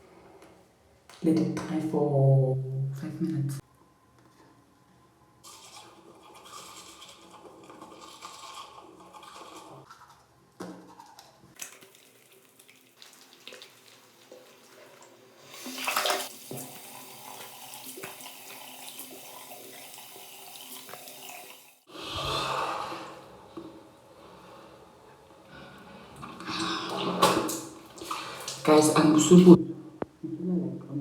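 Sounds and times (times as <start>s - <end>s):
tap water running into sink: 11.6s - 21.8s.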